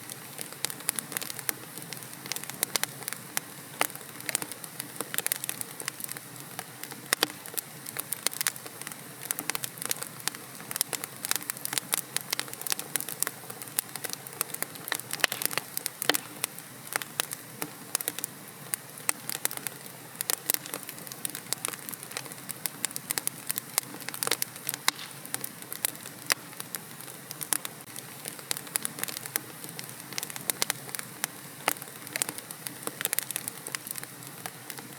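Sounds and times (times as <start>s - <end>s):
wood fire crackling: 0.0s - 34.9s
sharp pops and snaps: 3.8s - 18.3s, 19.4s - 34.9s
soft hiss: 24.3s - 34.9s.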